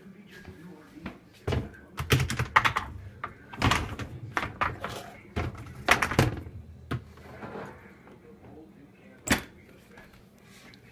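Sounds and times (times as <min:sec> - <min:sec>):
dishwasher parts clattering: 0:02.4 - 0:07.7.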